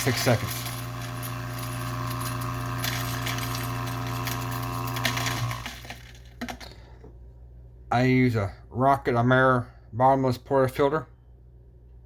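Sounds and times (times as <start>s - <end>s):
coffee grinder motor grinding: 0.0s - 6.2s.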